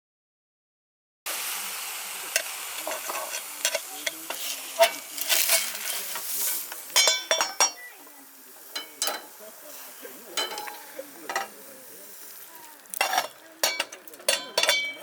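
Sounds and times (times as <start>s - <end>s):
meat sizzling over a campfire: 1.3s - 15.0s
metal utensils scraping: 2.3s - 7.9s, 8.6s - 15.0s.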